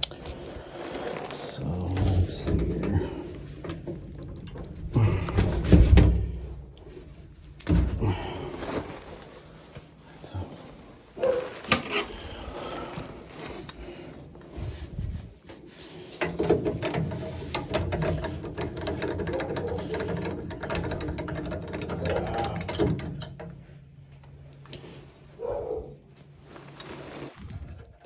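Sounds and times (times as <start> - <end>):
low steady hum: 0.0 - 28.0
small motor clicking and rattling: 16.2 - 23.4.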